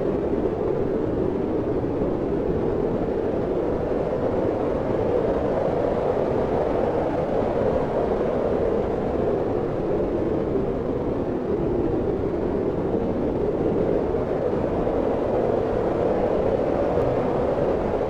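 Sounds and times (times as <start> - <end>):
strong wind blowing: 11.0 - 18.0.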